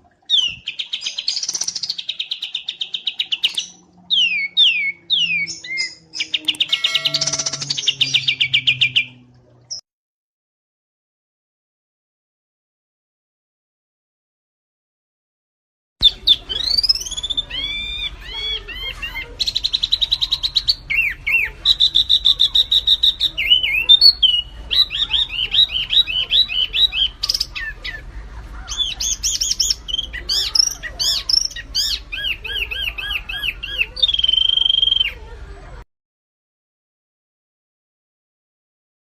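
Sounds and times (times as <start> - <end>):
songbird singing: 0.3 - 9.8, 16.0 - 35.2.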